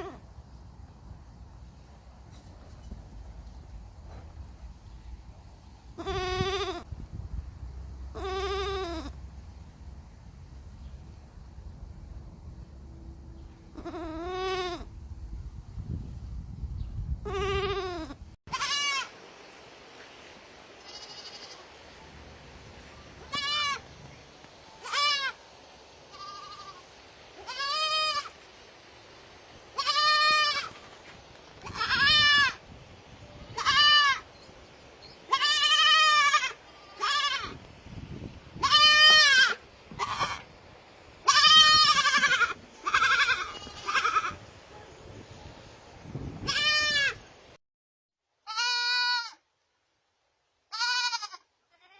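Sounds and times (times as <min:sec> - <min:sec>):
baby goats bleating: 0:00.0 - 0:00.2, 0:06.0 - 0:06.9, 0:08.1 - 0:09.2, 0:13.7 - 0:14.9, 0:17.2 - 0:19.1, 0:20.8 - 0:21.6, 0:23.2 - 0:23.8, 0:24.8 - 0:25.4, 0:26.1 - 0:28.4, 0:29.8 - 0:30.8, 0:31.6 - 0:32.6, 0:33.4 - 0:34.3, 0:35.3 - 0:37.6, 0:38.6 - 0:40.5, 0:41.2 - 0:44.4, 0:46.4 - 0:47.2, 0:48.4 - 0:49.4, 0:50.7 - 0:51.9.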